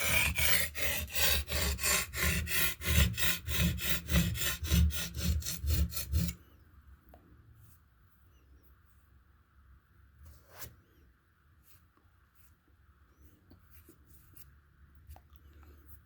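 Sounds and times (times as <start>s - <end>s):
knife rasping on sharpening stone: 0.0s - 6.4s.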